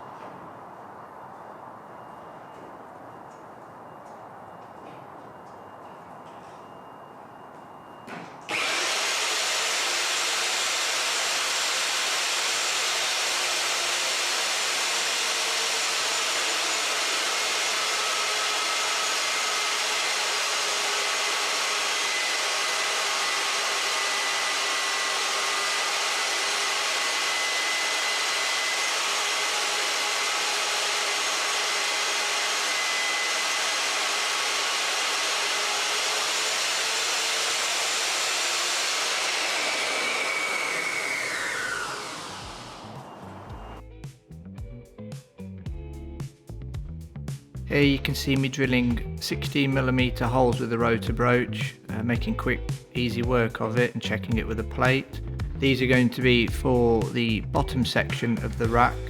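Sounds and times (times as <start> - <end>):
magnetic drill boring steel: 8.5 - 43.8.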